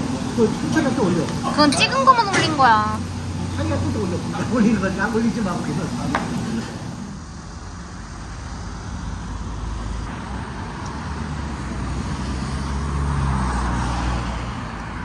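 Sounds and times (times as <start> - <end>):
road noise: 0.0 - 15.0.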